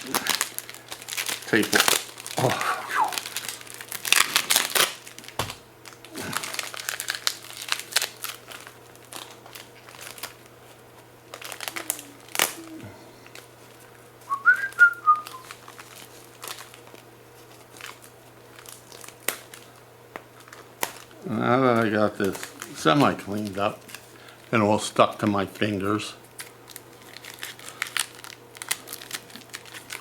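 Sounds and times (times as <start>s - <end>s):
duct tape crinkling and clicking: 0.0s - 30.0s
rising and falling whistle: 14.3s - 15.4s.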